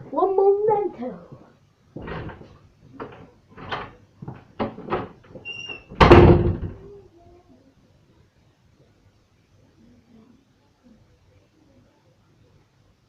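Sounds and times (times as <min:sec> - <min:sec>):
door slamming shut: 0:02.0 - 0:02.5, 0:04.6 - 0:06.9.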